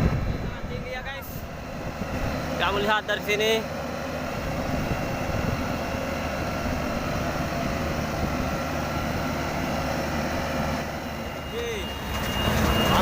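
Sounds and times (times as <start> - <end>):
motor engine droning: 0.0 - 13.0.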